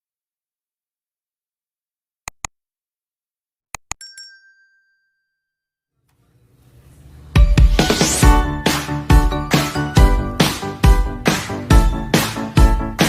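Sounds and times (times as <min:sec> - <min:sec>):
sharp clicks: 0:02.3 - 0:02.6, 0:03.7 - 0:04.0
ringing metallic clink: 0:04.0 - 0:05.5
music: 0:06.6 - 0:13.0.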